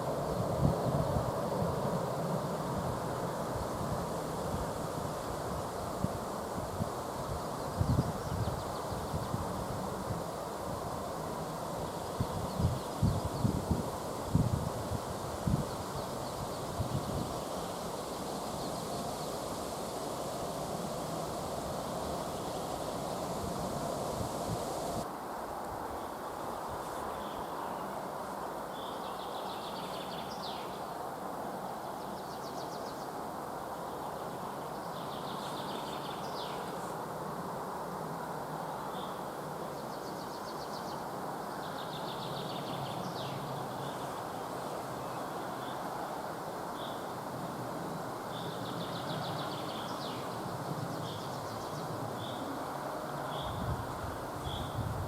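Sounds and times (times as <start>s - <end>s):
low rushing noise: 18.8s - 25.1s.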